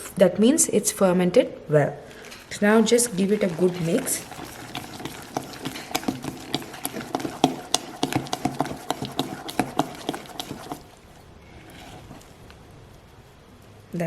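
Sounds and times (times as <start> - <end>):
batter squelching: 2.2 - 13.1.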